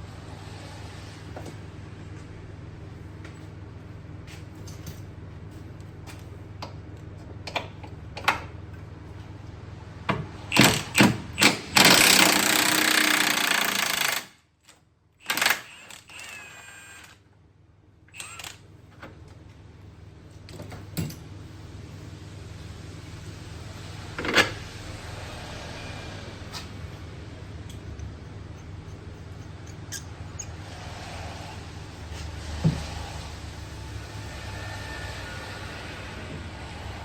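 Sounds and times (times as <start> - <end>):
steady low hum: 17.4 - 37.0.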